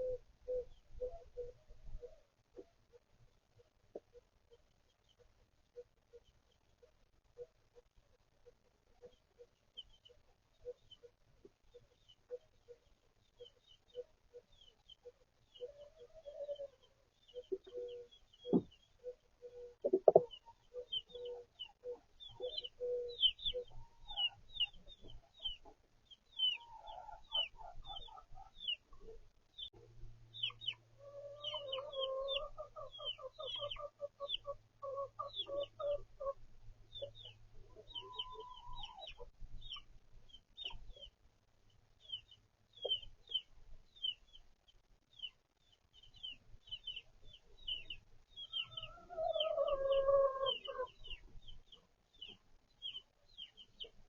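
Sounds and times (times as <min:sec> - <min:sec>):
chicks peeping: 0:09.0 - 0:41.2, 0:42.0 - 0:54.0
hens clucking: 0:15.6 - 0:29.2, 0:30.4 - 0:39.8, 0:47.7 - 0:51.3.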